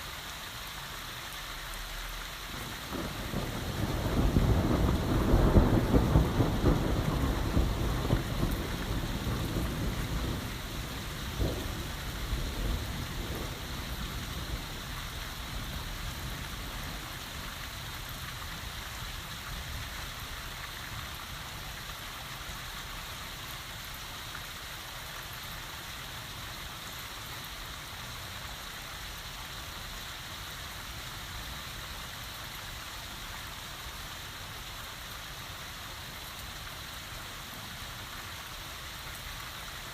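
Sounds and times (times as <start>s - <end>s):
heavy rain falling: 0.0s - 39.9s
thunder rumbling: 2.6s - 15.0s
sharp thunder cracks: 2.9s - 10.5s.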